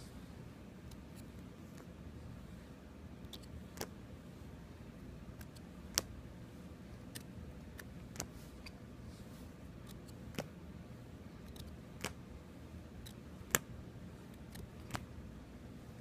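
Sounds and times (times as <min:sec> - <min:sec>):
room heater humming: 0:00.0 - 0:16.0.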